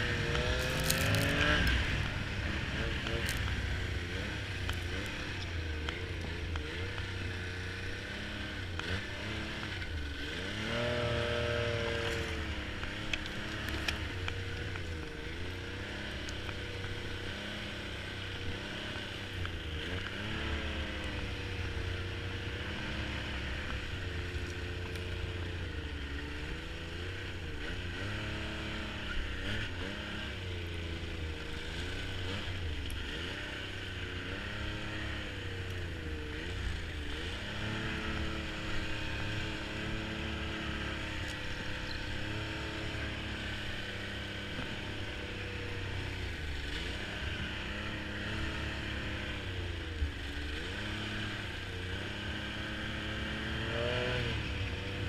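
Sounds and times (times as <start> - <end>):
snowmobile engine revving: 0.0 - 55.0.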